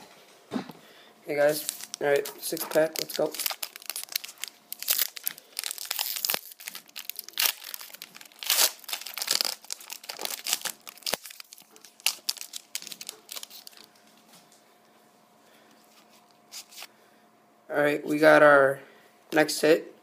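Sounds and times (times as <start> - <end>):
wrapper tearing and crinkling: 1.4 - 13.9, 15.9 - 16.9.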